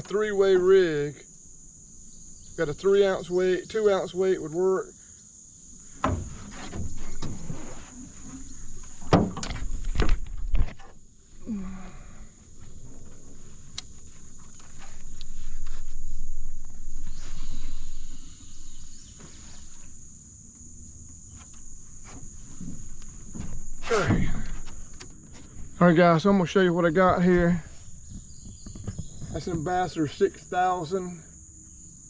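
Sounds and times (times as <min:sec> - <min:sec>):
crickets trilling: 0:00.0 - 0:32.0
knocks and handling noise: 0:06.0 - 0:11.0.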